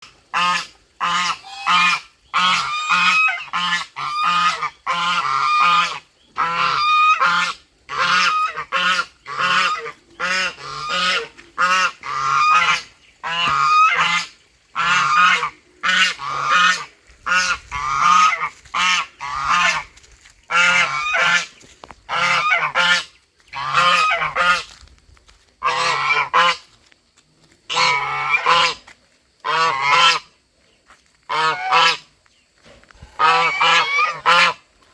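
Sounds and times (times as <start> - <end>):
goose honking: 0.3 - 19.9, 20.5 - 21.5, 22.1 - 24.7, 25.6 - 26.6, 27.7 - 28.8, 29.4 - 30.3, 31.3 - 32.1, 33.2 - 34.6.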